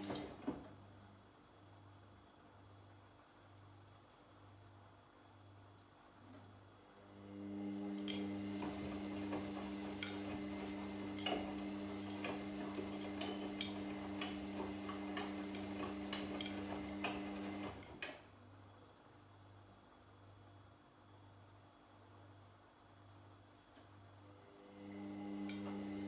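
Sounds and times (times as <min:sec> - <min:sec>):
washing machine motor hum: 0:00.0 - 0:01.2, 0:06.8 - 0:18.2, 0:24.2 - 0:26.0.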